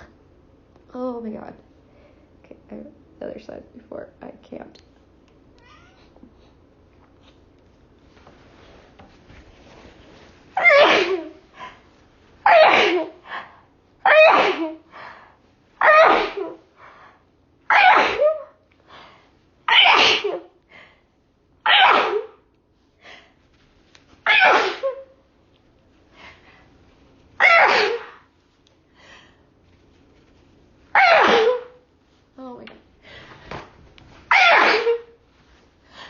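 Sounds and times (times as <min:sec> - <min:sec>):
woman sneezing loudly: 0:10.6 - 0:11.4, 0:12.4 - 0:13.2, 0:14.0 - 0:14.9, 0:15.8 - 0:16.7, 0:17.7 - 0:18.6, 0:19.7 - 0:20.6, 0:21.6 - 0:22.4, 0:24.2 - 0:25.1, 0:27.4 - 0:28.3, 0:31.0 - 0:31.8, 0:34.3 - 0:35.2.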